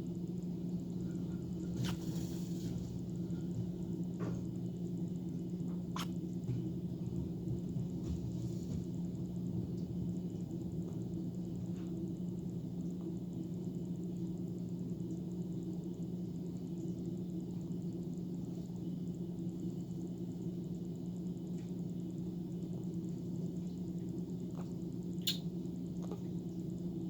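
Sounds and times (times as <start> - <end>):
steady low two-tone hum: 0.0 - 27.0
faint short clicks: 25.2 - 25.4.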